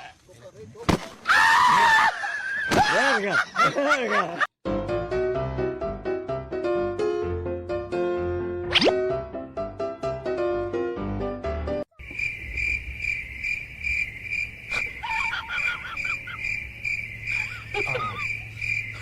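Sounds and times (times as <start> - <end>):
piano music: 4.6 - 11.9
cricket chirping: 12.0 - 19.0.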